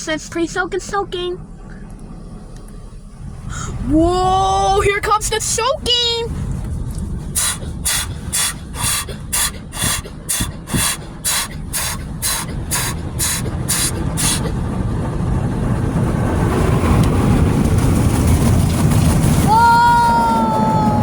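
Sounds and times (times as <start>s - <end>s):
rush of water and machinery: 0.0s - 21.0s
pulsing hissing water spray: 4.8s - 16.0s.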